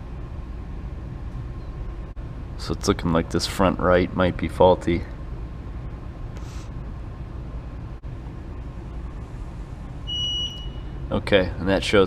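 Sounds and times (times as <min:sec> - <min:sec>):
low background hum: 0:00.0 - 0:12.0
high electronic beep: 0:10.1 - 0:10.9.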